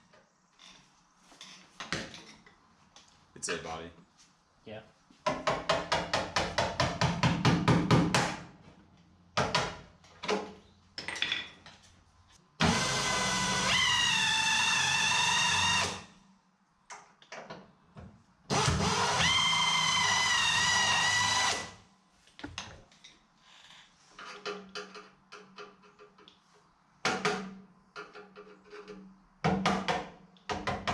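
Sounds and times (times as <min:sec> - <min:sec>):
tools and parts knocking: 0:05.2 - 0:08.4, 0:24.2 - 0:26.3, 0:27.0 - 0:30.9
drill whining: 0:12.6 - 0:16.1, 0:18.5 - 0:21.8.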